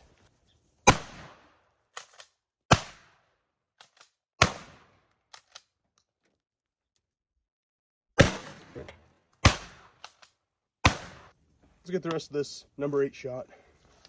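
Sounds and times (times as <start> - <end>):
shotgun shots: 0.8 - 1.5, 2.7 - 3.2, 4.4 - 5.0, 8.2 - 8.8, 9.4 - 10.0, 10.8 - 11.3.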